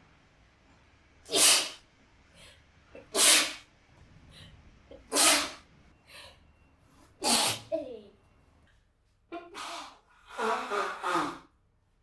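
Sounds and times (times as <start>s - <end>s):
woman sneezing: 1.3s - 1.8s, 3.0s - 3.6s, 7.2s - 7.8s.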